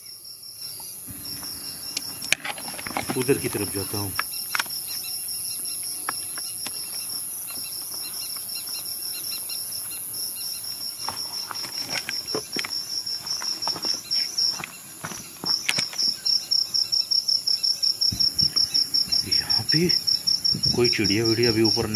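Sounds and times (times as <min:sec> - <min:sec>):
crickets chirping: 0:00.0 - 0:21.9
high insect buzz: 0:00.0 - 0:21.9
footsteps crunching on ground: 0:01.1 - 0:05.1, 0:05.9 - 0:16.2.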